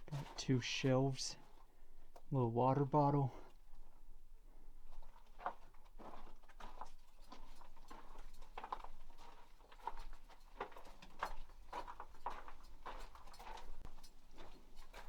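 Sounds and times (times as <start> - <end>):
footsteps crunching on gravel: 5.0 - 15.0.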